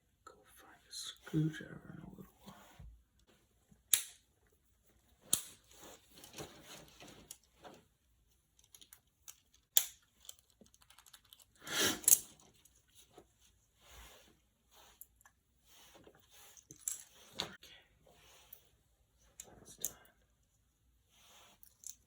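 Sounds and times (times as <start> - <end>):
plastic parts clicking and tapping: 8.6 - 12.7.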